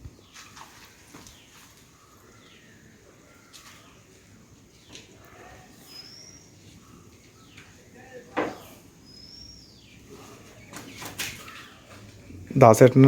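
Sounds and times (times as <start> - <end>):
faint voices: 2.0 - 9.2, 9.8 - 13.0
bird whistled calls: 5.8 - 6.6, 9.0 - 10.0.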